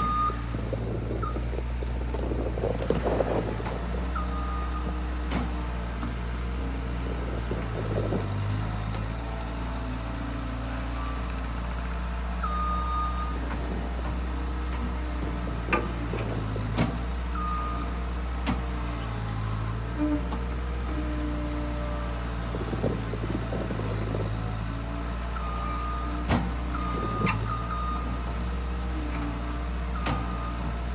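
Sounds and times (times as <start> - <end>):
skid loader engine running: 0.0 - 30.9.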